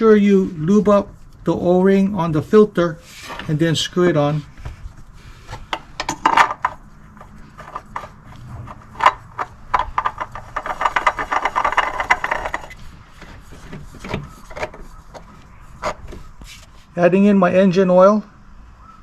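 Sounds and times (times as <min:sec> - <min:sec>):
oil filter being screwed on: 0:04.4 - 0:16.8
tool knocks and rubbing: 0:04.4 - 0:16.9
rapid clicking: 0:07.6 - 0:12.8.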